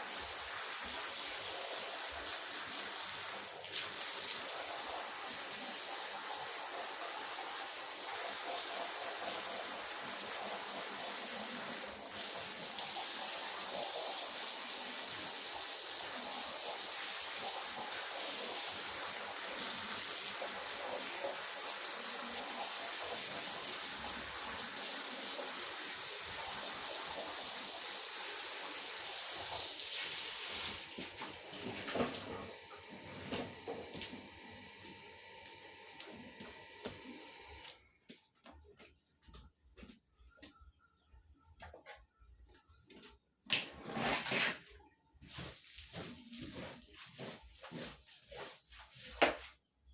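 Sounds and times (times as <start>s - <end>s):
floor polisher wet hiss: 0.0s - 37.7s.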